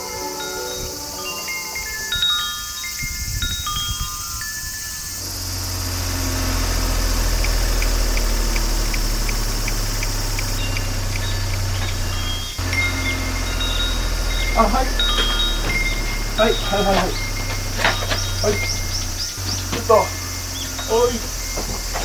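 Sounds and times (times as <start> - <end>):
chimes ringing: 0.0 - 5.4, 7.2 - 22.0
faint ticking: 5.2 - 22.0.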